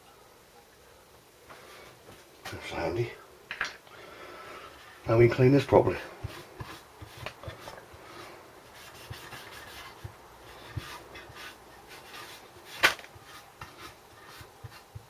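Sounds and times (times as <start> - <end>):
hand rubbing engine part: 5.1 - 15.0.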